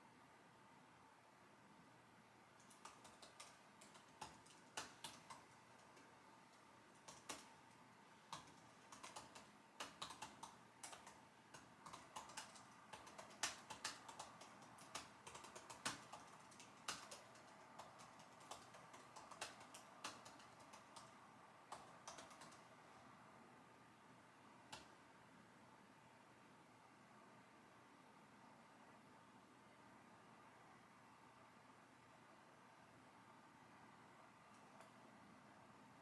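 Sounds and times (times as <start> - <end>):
computer keyboard typing: 2.6 - 22.9.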